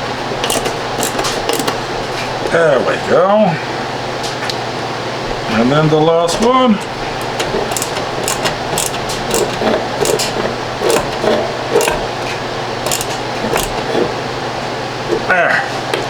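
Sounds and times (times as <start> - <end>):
steady background hum: 0.0 - 16.0
light clicks and creaks: 6.8 - 14.1.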